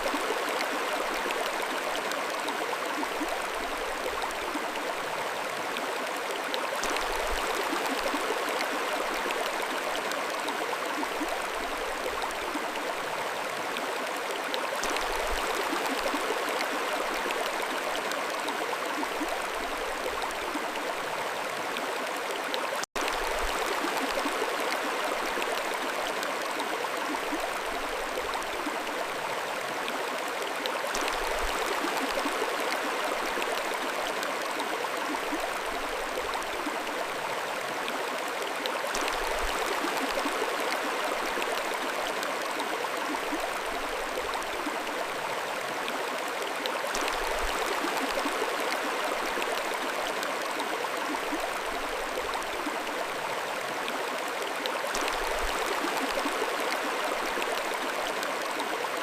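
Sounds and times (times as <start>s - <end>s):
mountain stream flowing: 0.0s - 59.0s.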